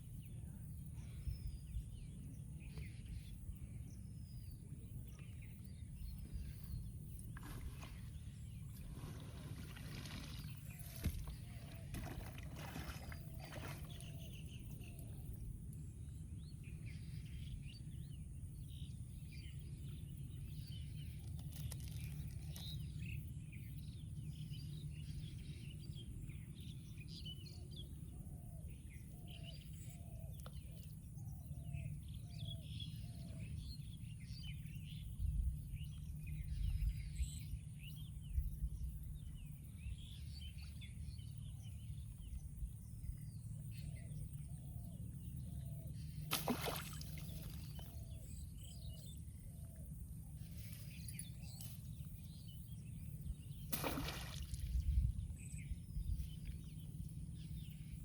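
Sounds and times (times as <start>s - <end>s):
low rumble of wind: 0.0s - 58.0s
small birds chirping: 45.3s - 58.0s.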